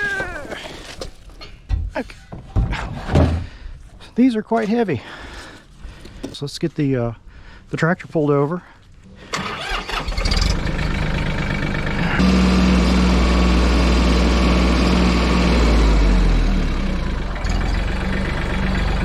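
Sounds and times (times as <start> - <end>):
tractor diesel engine running: 9.3 - 19.0.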